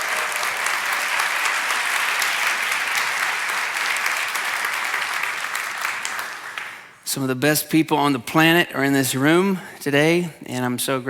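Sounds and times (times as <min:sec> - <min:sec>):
crowd applauding: 0:00.0 - 0:07.0.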